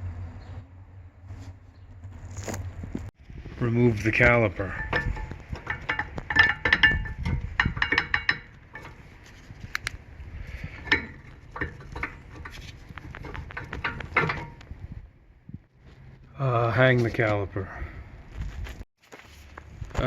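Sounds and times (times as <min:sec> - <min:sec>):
metal clinking and rattling: 0:03.9 - 0:14.9.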